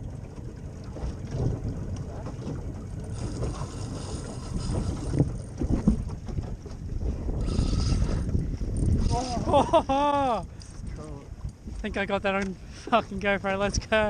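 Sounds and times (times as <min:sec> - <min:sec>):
wind rumbling on microphone: 0:00.0 - 0:14.0
microphone handling noise: 0:03.2 - 0:09.5.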